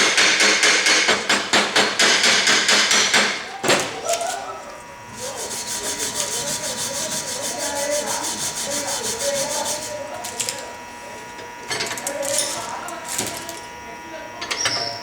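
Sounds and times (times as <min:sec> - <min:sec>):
wire brush scrubbing metal: 0:05.1 - 0:10.6.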